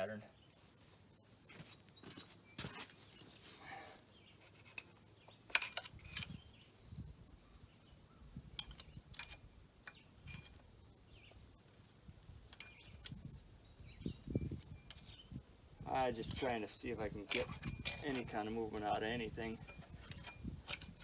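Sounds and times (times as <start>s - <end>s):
metallic clicks and clinks of tools: 5.5s - 6.4s, 8.6s - 10.6s, 17.3s - 21.0s.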